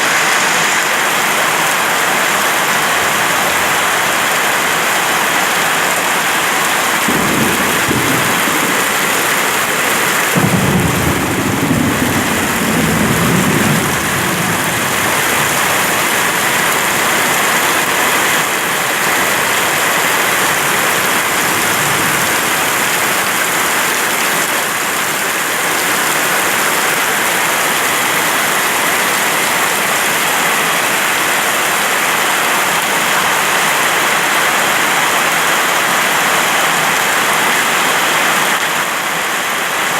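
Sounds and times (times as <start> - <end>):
heavy rain falling: 0.0 - 39.9
thunder rolling: 5.9 - 19.5.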